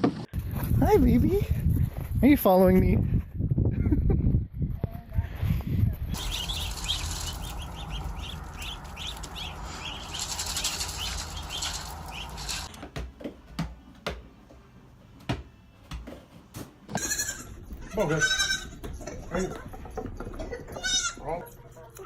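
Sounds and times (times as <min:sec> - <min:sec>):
small birds chirping: 0:06.0 - 0:12.8.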